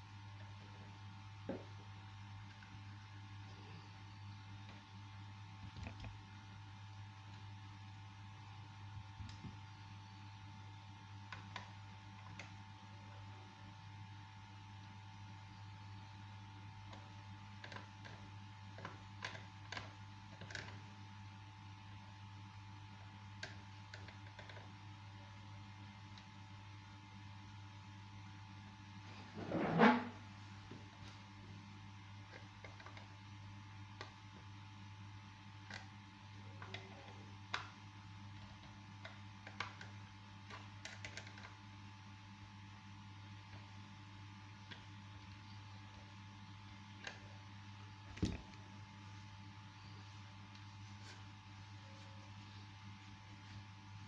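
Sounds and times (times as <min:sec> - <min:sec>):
electrical hum: 0:00.0 - 0:54.0
small clicks and taps: 0:16.8 - 0:20.9, 0:23.3 - 0:24.8, 0:32.3 - 0:33.2, 0:36.6 - 0:41.6.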